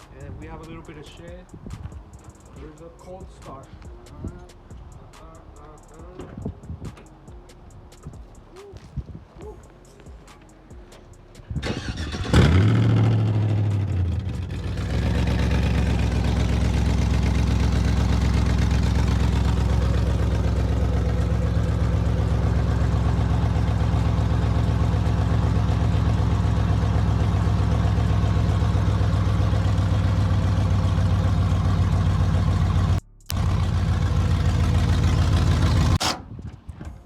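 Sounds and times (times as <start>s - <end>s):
truck engine starting and idling: 10.4s - 37.0s.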